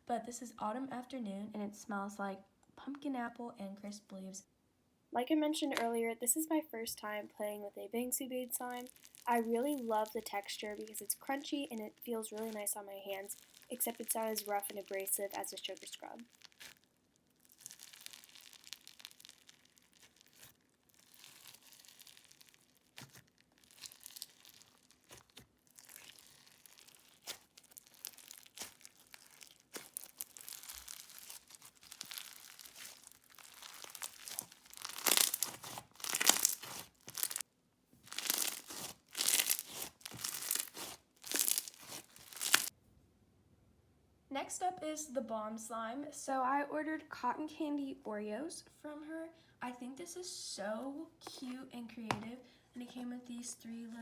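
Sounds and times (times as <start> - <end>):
crunchy slime squished by hand: 8.4 - 42.7.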